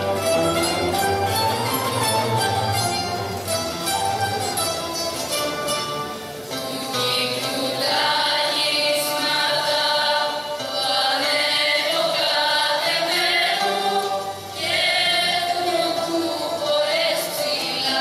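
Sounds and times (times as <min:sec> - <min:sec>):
group of voices singing: 0:06.5 - 0:18.0.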